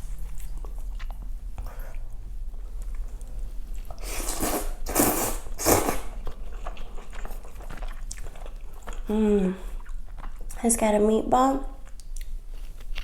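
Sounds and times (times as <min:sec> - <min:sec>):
loud rushing eating sounds: 0:04.0 - 0:06.3.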